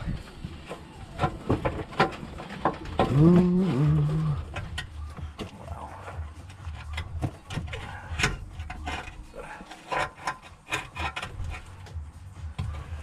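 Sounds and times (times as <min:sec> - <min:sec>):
pump knocking and scraping: 0:00.0 - 0:13.0.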